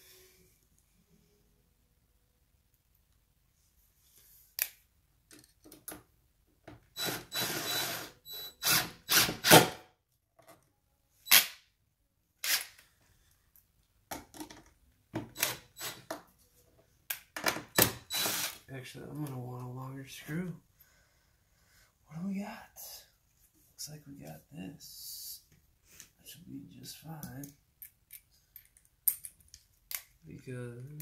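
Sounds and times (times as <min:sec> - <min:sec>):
power drill running: 0:07.0 - 0:09.8, 0:17.8 - 0:18.6.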